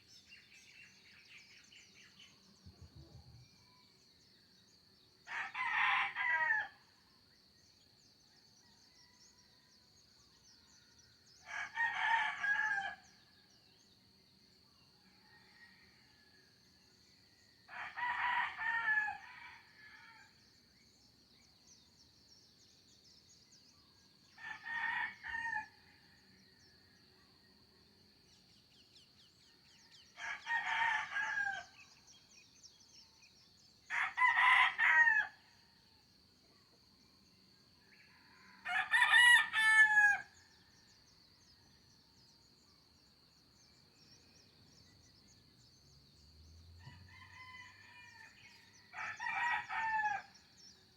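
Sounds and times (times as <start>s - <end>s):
roosters crowing: 30.2s - 31.7s, 33.9s - 35.4s, 38.5s - 40.4s, 48.9s - 50.3s.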